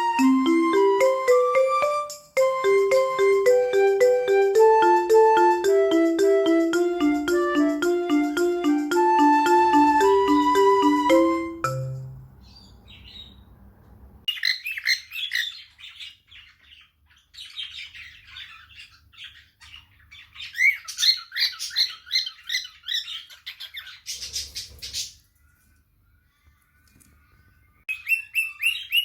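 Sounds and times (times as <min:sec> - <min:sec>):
parrots chattering: 0:14.3 - 0:25.3.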